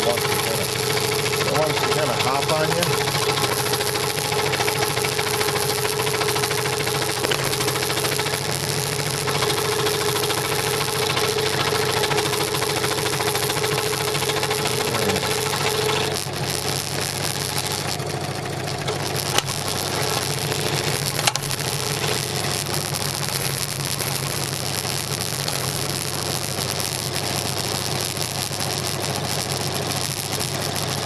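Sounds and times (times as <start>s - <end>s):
scroll saw cutting wood: 0.0s - 16.4s
sharp clicks: 0.0s - 31.0s.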